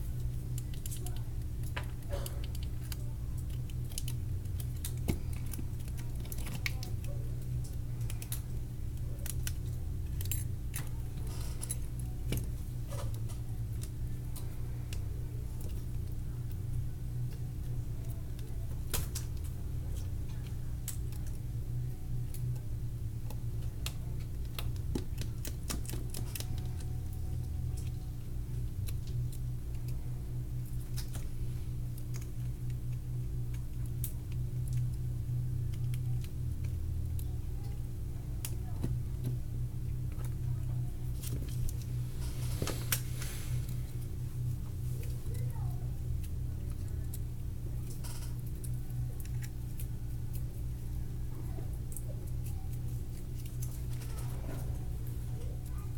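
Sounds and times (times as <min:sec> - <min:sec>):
steady low hum: 0:00.0 - 0:55.9
small clicks and taps: 0:22.3 - 0:28.0.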